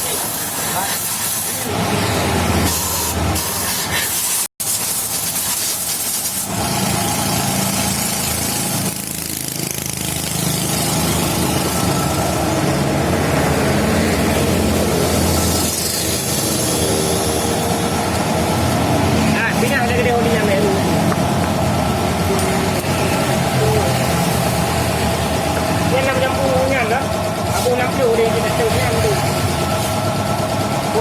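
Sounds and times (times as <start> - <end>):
motorcycle engine running: 6.5 - 31.0.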